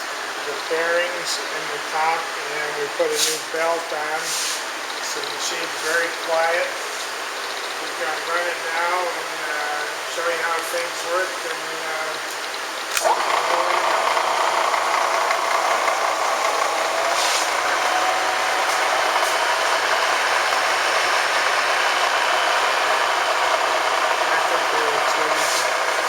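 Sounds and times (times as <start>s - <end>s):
milling machine motor whine: 11.4s - 26.0s.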